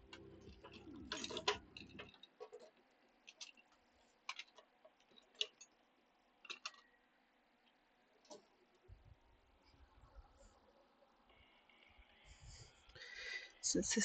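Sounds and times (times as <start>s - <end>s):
background music: 0.0s - 2.1s.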